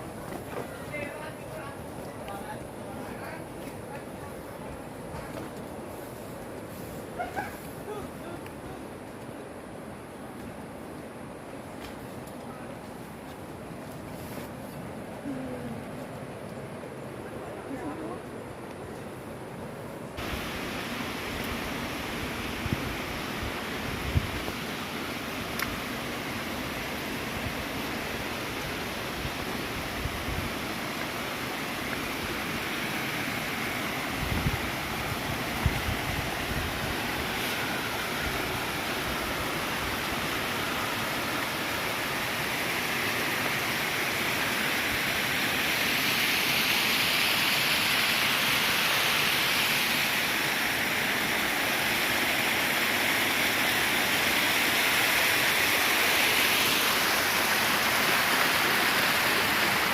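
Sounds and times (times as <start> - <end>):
rushing water: 18.5 - 59.9.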